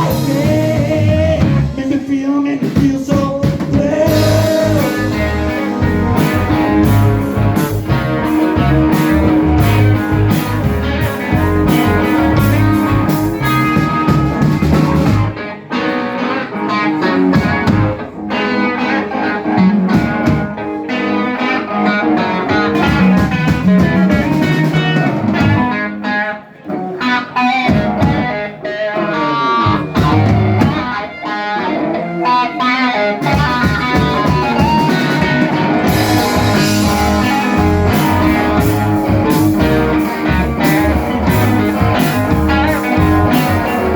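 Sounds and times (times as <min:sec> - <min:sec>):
bass: 0:00.0 - 0:15.4, 0:17.1 - 0:18.1, 0:21.9 - 0:25.8, 0:29.6 - 0:30.9, 0:33.2 - 0:43.9
drums and cymbals: 0:00.0 - 0:15.4, 0:17.4 - 0:18.1, 0:19.9 - 0:20.8, 0:22.7 - 0:25.7, 0:27.7 - 0:28.4, 0:29.8 - 0:31.1, 0:33.2 - 0:43.9
electric guitar: 0:00.0 - 0:43.9.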